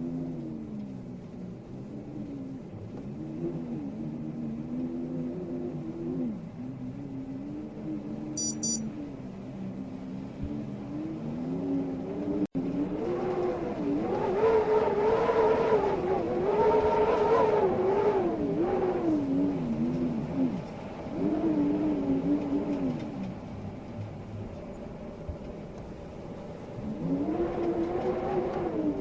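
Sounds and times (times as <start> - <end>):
howling wind: 0.0 - 29.0.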